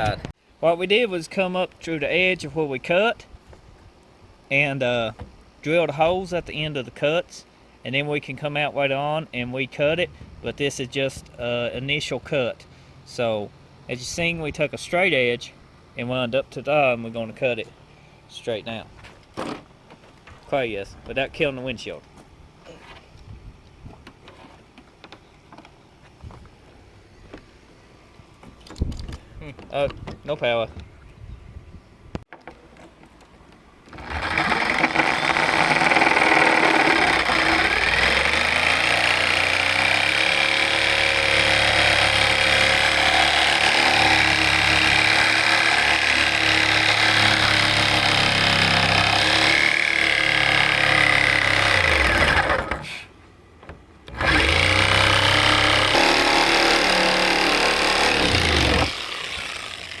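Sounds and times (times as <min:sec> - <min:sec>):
power saw cutting: 0:34.0 - 0:53.0, 0:54.1 - 1:00.0.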